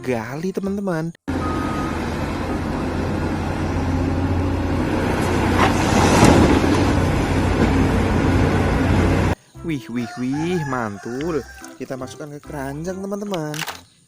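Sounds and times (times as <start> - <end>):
vehicle engine humming: 1.3 - 9.4.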